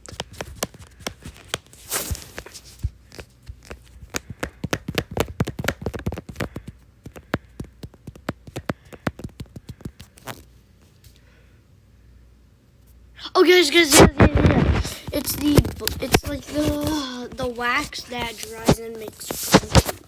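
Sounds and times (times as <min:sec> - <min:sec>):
sharp taps and clicks: 0:03.1 - 0:10.4.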